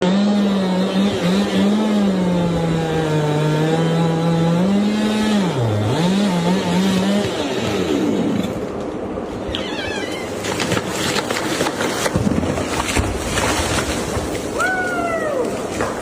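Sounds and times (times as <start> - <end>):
chainsaw engine running: 0.0 - 8.6.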